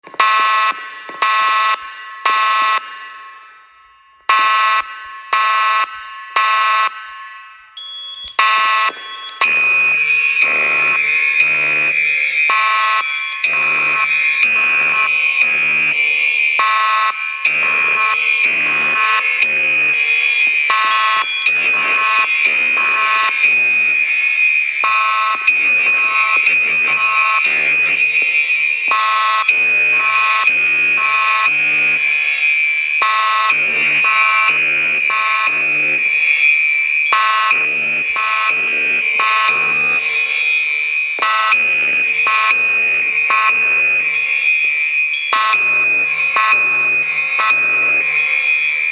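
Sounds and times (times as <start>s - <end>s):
fire alarm horn blasts: 0.0s - 48.9s
steady high-pitched tone: 7.6s - 16.6s, 17.2s - 48.9s.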